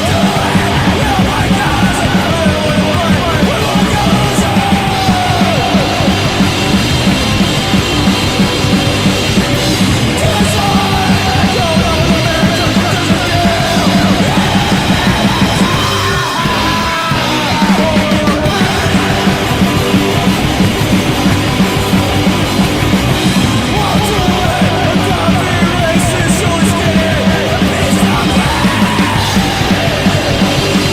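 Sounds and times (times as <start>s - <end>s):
drum kit: 0.0s - 30.9s
punk rock band playing: 0.0s - 30.9s
person yelling vocals: 23.8s - 30.5s.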